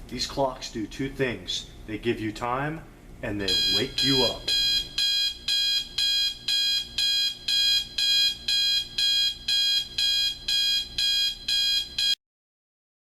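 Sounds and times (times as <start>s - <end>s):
alarm clock buzzy beeping: 3.5s - 12.2s.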